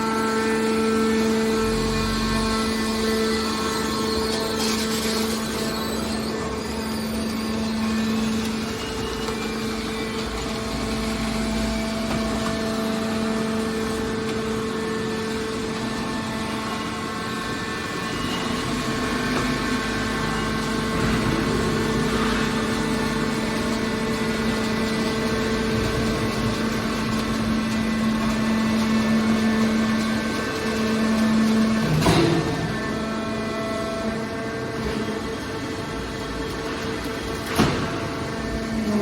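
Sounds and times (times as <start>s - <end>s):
hydraulic press motor and pump humming: 0.0s - 39.0s.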